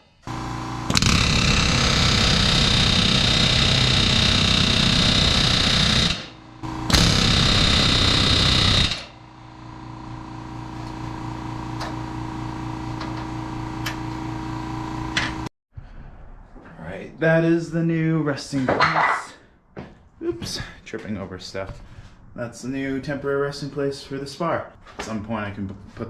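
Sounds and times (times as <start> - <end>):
steady machine hum: 0.0 - 15.5
pneumatic rivet gun hammering: 0.2 - 9.2.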